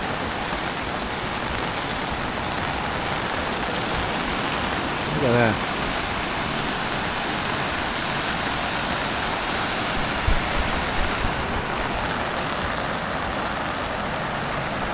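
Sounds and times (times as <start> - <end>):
heavy rain and rushing water: 0.0 - 14.9
low thumps: 10.0 - 11.7.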